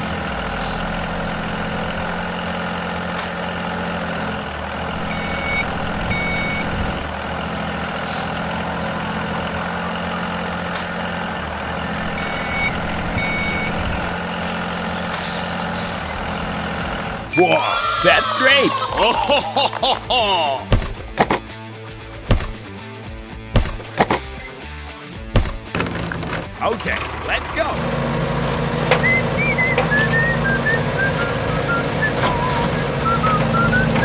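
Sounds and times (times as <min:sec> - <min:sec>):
heavy vehicle engine running: 0:00.0 - 0:34.0
reversing alarm beeps: 0:04.9 - 0:09.0, 0:12.0 - 0:16.3, 0:17.3 - 0:18.2, 0:28.9 - 0:34.0
brief air hiss: 0:07.8 - 0:08.7.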